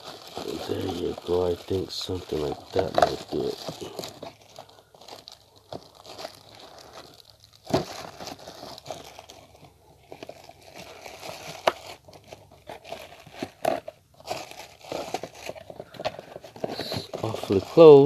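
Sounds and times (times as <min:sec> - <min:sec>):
cardboard crinkling and rustling: 0:00.0 - 0:18.0.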